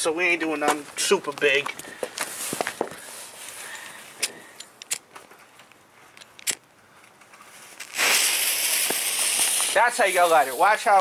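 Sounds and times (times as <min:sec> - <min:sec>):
firework hissing: 0:07.7 - 0:11.0.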